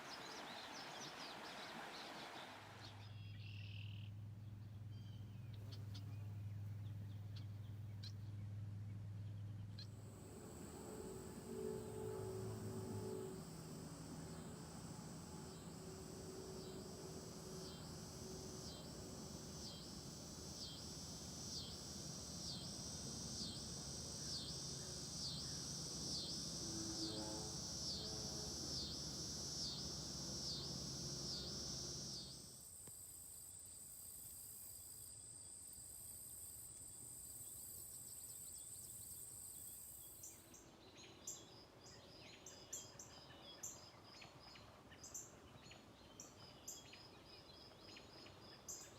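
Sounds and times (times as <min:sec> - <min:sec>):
high-pitched insect drone: 0:10.0 - 0:32.6.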